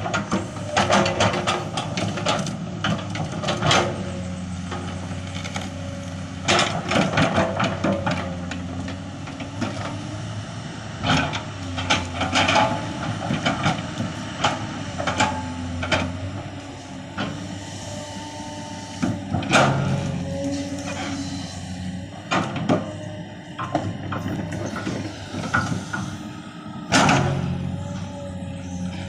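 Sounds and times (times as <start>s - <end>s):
excavator diesel engine running: 0.0s - 29.0s
metal clanks and knocks: 26.9s - 28.2s.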